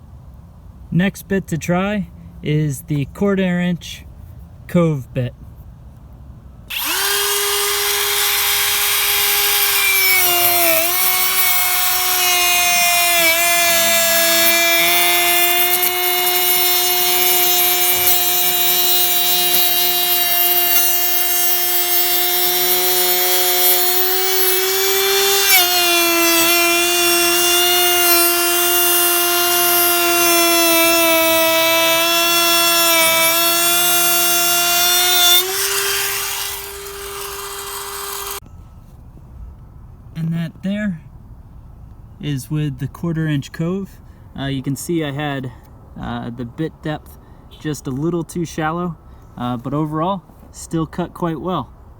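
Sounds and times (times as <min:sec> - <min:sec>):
electric router cutting wood: 0:06.7 - 0:38.4.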